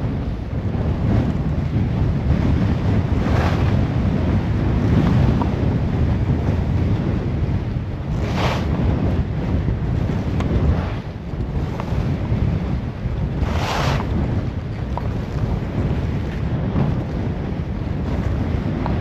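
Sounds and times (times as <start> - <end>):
wind buffeting microphone: 0.0 - 19.0
ski edges scraping snow: 3.0 - 4.2, 8.1 - 8.8, 13.4 - 14.2.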